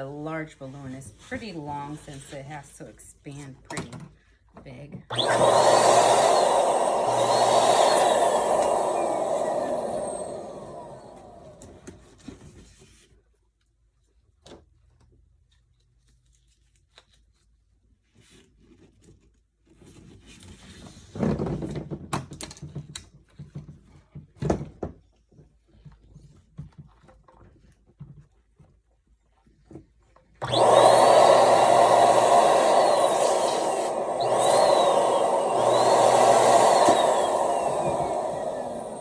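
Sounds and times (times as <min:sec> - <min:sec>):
electric balloon pump: 0:05.1 - 0:12.1, 0:30.4 - 0:39.0.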